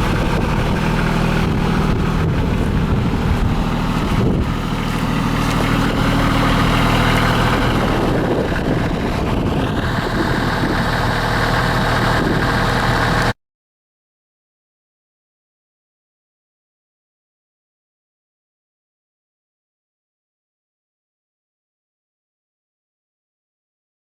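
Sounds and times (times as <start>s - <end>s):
higher engine note: 0.0s - 13.4s
tractor diesel engine running: 0.0s - 13.4s.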